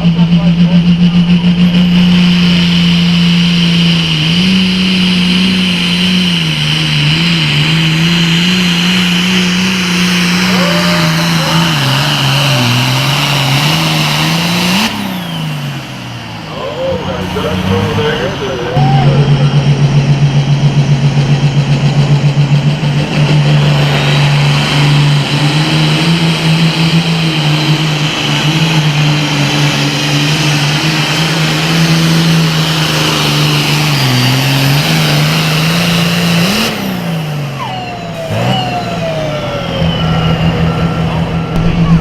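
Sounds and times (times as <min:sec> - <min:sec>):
tractor engine at full throttle: 0:00.0 - 0:42.0
high whine: 0:15.1 - 0:35.6, 0:37.4 - 0:42.0.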